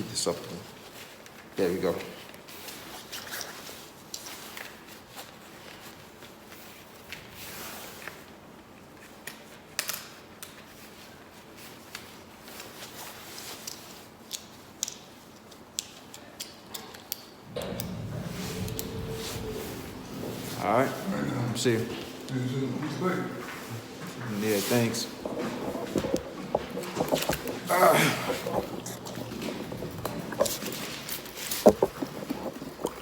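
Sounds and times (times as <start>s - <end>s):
low rumble: 17.5s - 33.0s.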